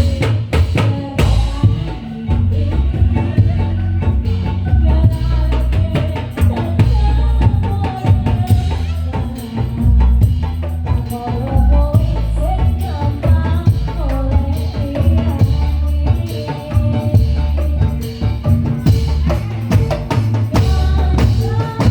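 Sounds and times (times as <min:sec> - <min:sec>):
fast percussion strikes: 0:00.0 - 0:21.9
heavy bass: 0:00.0 - 0:21.9
percussion ensemble music: 0:00.0 - 0:21.9.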